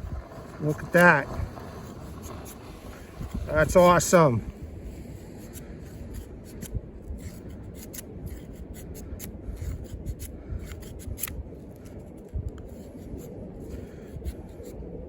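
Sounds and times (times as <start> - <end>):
knife scraping wood: 4.9 - 14.9.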